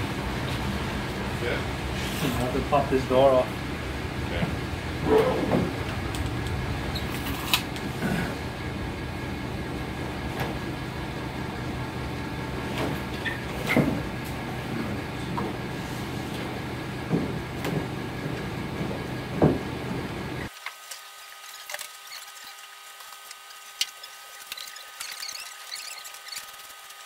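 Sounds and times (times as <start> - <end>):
steady mechanical hum: 0.0 - 27.0.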